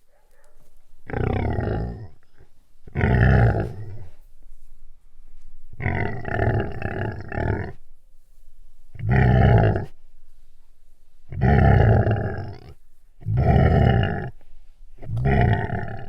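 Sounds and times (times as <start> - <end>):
large animal growling: 1.0 - 4.2, 5.8 - 7.8, 9.0 - 10.0, 11.3 - 14.4, 15.0 - 16.0.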